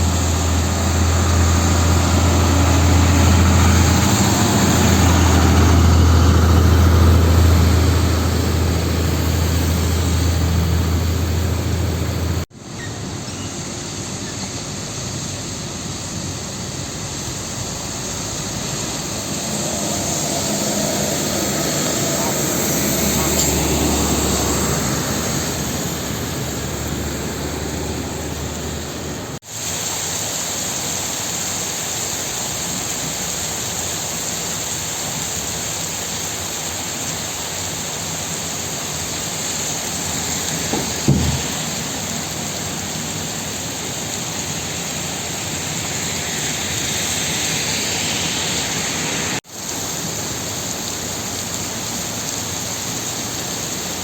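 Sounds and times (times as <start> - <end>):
heavy rain falling: 0.0 - 54.0
low thump: 40.7 - 41.8.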